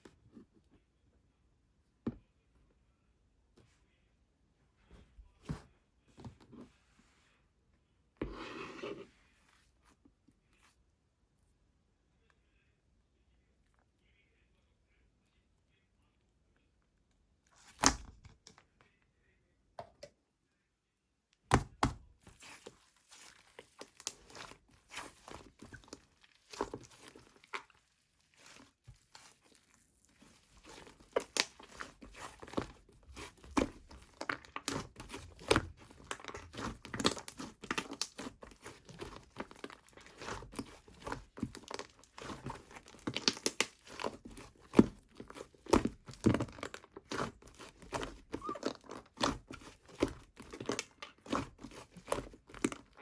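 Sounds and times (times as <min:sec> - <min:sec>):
slime crackling and popping: 0:21.5 - 0:52.8.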